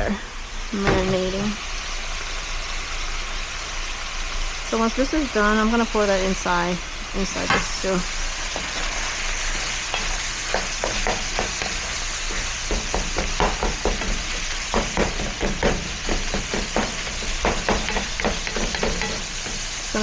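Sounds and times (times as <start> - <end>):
meat sizzling in a pan: 0.0 - 20.0
utensil scraping a pan: 7.5 - 20.0.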